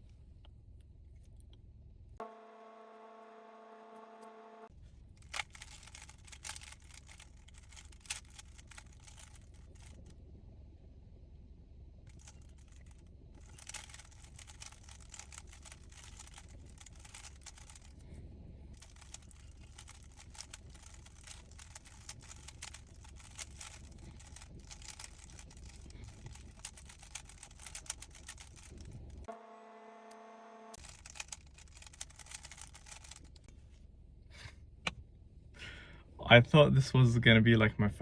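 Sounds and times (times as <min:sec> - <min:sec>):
puzzle cube plastic clicks: 0:05.2 - 0:10.0, 0:12.1 - 0:18.1, 0:18.8 - 0:29.3, 0:30.8 - 0:33.5.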